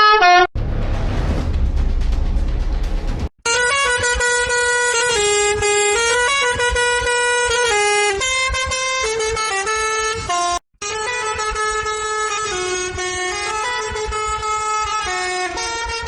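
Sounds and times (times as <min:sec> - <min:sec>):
bus horn playing a tune: 0:03.5 - 0:16.0.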